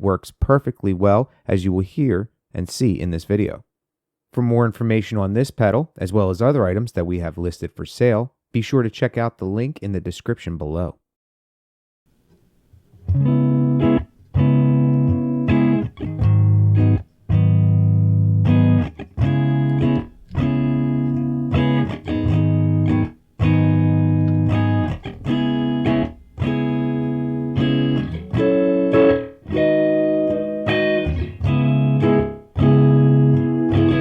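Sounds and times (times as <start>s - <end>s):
electric guitar chords: 13.0s - 34.0s.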